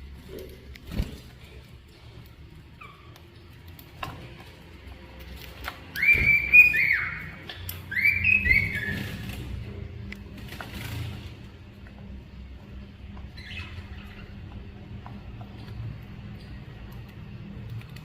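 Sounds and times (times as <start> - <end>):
cockatiel whistling: 5.9 - 9.2.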